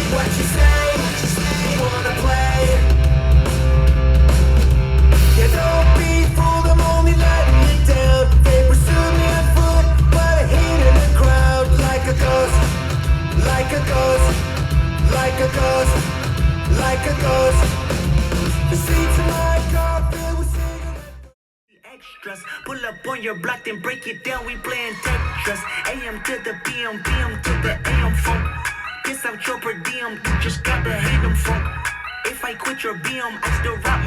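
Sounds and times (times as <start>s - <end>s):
person singing: 0.0s - 3.0s, 5.3s - 17.9s, 18.6s - 34.0s
electric guitars: 0.0s - 19.8s
steady heavy bass: 0.0s - 21.3s, 25.1s - 25.8s, 27.1s - 28.7s, 30.3s - 31.9s, 33.5s - 34.0s
drums: 0.0s - 21.4s, 24.4s - 34.0s
punk rock song: 0.0s - 21.4s, 23.1s - 34.0s.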